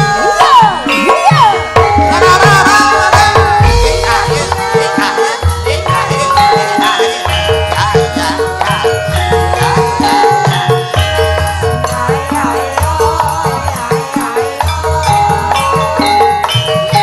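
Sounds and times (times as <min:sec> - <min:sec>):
wavering higher melody: 0:00.0 - 0:12.5.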